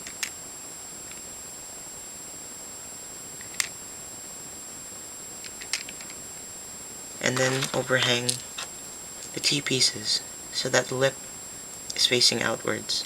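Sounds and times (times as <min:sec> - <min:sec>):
steady hiss: 0:00.1 - 0:13.0
high whine: 0:07.1 - 0:11.6.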